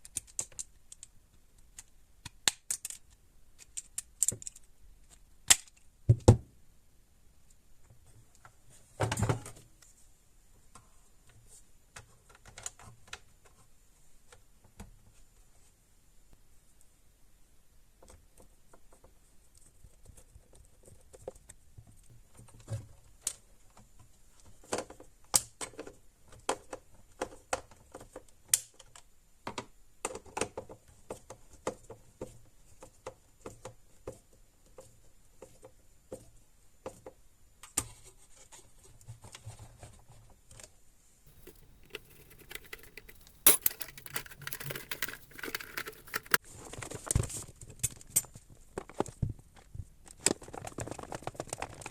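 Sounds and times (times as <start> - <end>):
light clicks and taps: 41.3 - 46.4
scraping and rubbing: 41.3 - 46.4.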